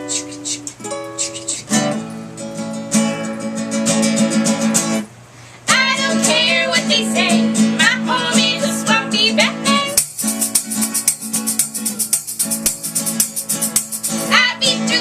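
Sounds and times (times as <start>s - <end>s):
acoustic guitar and ukulele strumming: 0.0s - 15.0s
high wavering wordless melody: 5.8s - 15.0s.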